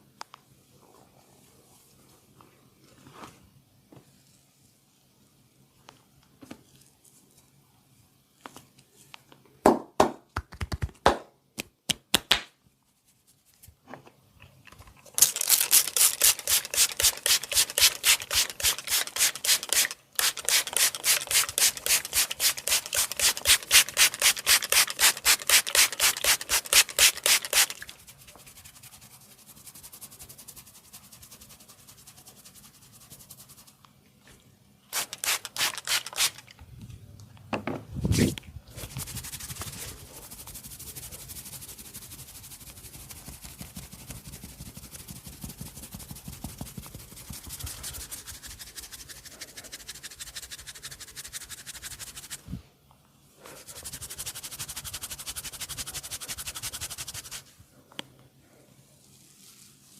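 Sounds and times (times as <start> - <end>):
hands rubbing briskly: 15.6 - 33.8, 38.1 - 52.5, 53.5 - 57.5.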